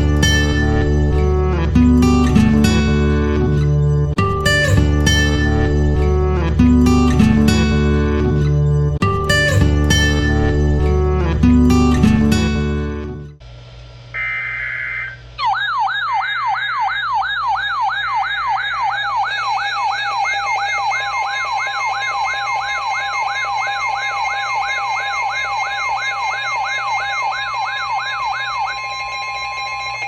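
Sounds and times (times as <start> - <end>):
header data screech: 0.0 - 13.1, 14.2 - 30.0
siren-like alert tone sweeping down: 14.2 - 30.0.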